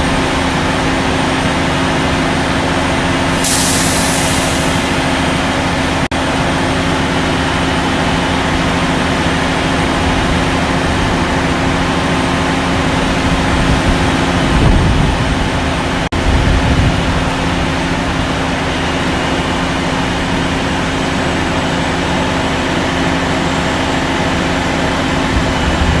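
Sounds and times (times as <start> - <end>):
heavy diesel engine running: 0.0 - 26.0.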